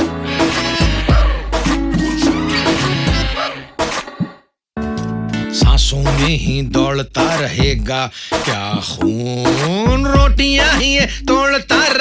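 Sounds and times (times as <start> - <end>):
instrumental film music: 0.0 - 3.4.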